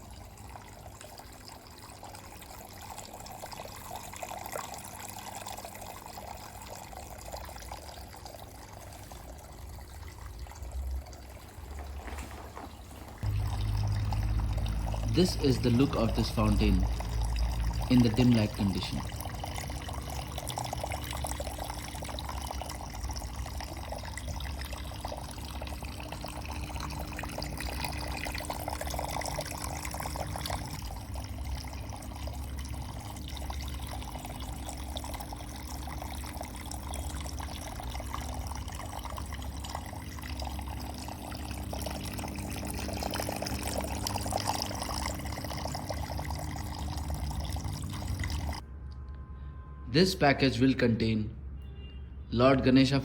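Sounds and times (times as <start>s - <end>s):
water trickling in fountain: 0.0s - 48.7s
low hum: 10.5s - 21.5s.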